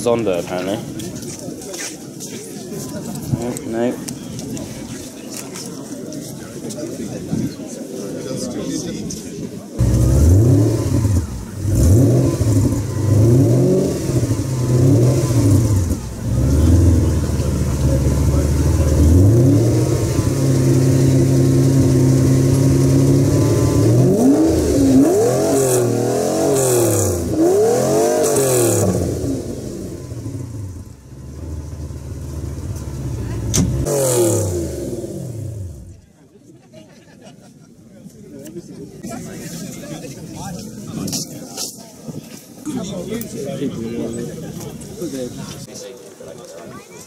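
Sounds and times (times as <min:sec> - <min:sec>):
car engine revving: 0:09.8 - 0:36.0.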